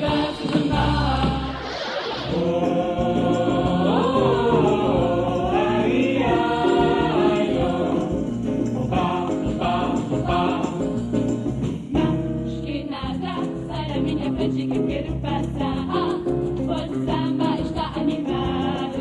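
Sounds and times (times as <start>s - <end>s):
choir singing in harmony: 0.0s - 19.0s.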